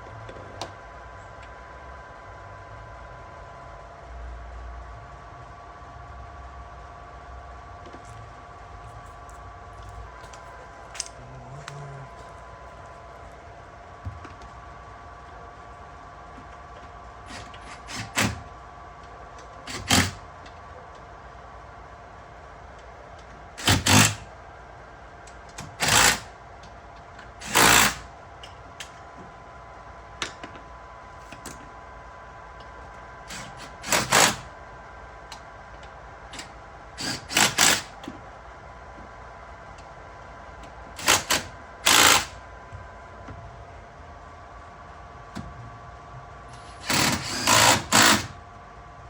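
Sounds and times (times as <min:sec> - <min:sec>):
steady faint hum: 0:00.0 - 0:49.0
power driver running in bolts: 0:27.4 - 0:28.0, 0:36.4 - 0:38.0, 0:41.0 - 0:42.4, 0:46.6 - 0:48.3.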